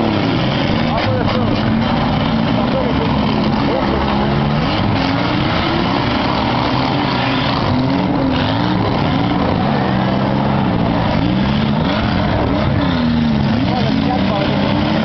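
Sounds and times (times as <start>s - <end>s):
car engines revving: 0.0s - 15.0s
loud steady din: 0.0s - 15.0s.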